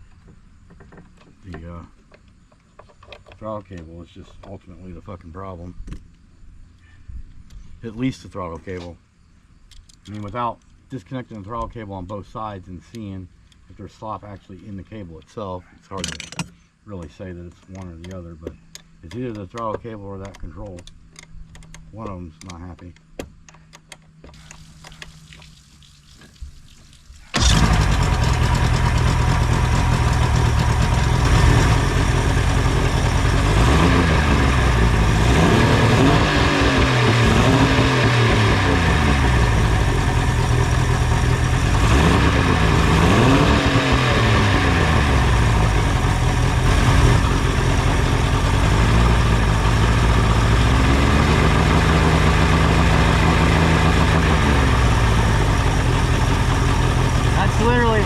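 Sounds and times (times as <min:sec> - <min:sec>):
outboard motor running: 0:27.3 - 0:58.0.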